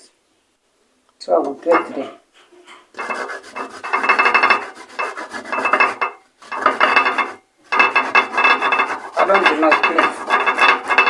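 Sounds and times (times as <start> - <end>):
nuts grated on metal grater: 3.0 - 11.0.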